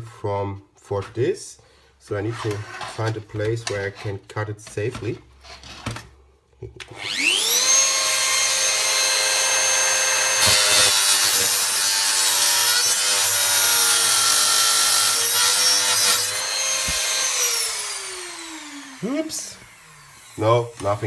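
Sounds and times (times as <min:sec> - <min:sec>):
rotary tool grinding metal: 0:07.0 - 0:21.0
rotary tool whining: 0:07.0 - 0:21.0.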